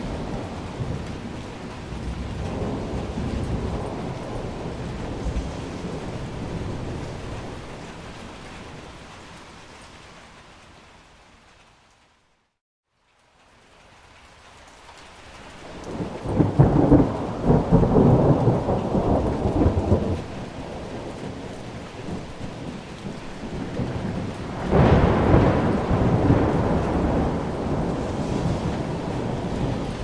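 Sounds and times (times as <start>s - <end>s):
rolling thunder: 0.0s - 9.0s, 15.7s - 30.0s
rain falling: 0.0s - 30.0s.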